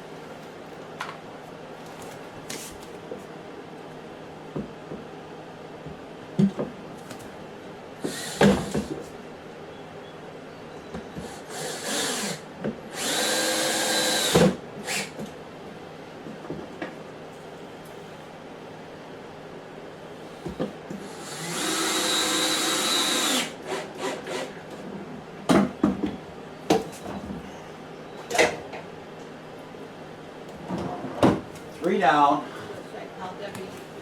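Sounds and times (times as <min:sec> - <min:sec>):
cordless drill whirring: 0:08.1 - 0:08.7, 0:11.2 - 0:15.2, 0:21.1 - 0:24.5.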